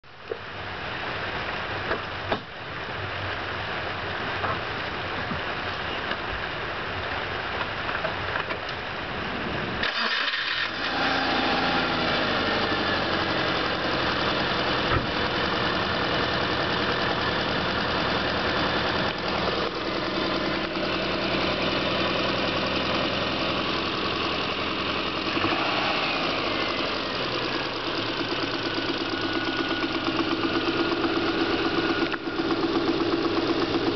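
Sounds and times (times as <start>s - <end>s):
engine running with rattle: 0.2s - 33.9s.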